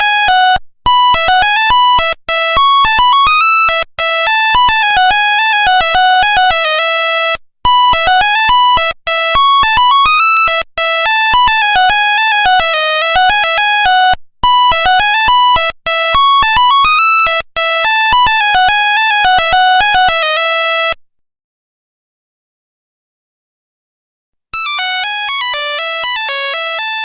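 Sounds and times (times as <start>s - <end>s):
ringtone of buzzy beeps: 7.8s - 21.0s, 24.6s - 27.0s.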